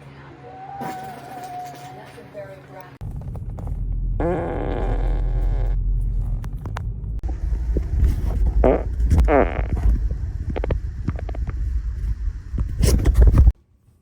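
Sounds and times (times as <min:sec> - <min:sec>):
steady low rumble: 0:03.0 - 0:13.6
pitched farts: 0:04.2 - 0:05.8, 0:07.8 - 0:11.6.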